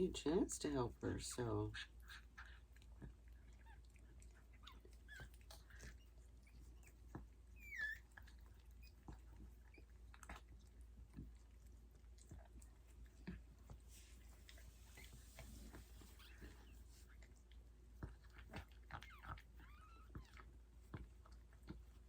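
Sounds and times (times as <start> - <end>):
puppy squeak: 4.6 - 6.9, 7.6 - 8.2.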